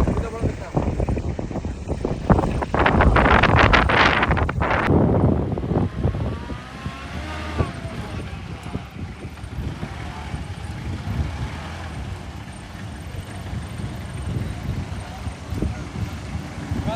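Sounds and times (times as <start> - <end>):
faint voices: 0.0 - 4.9, 7.5 - 11.4, 12.2 - 16.9
engine low rumble: 0.0 - 16.9.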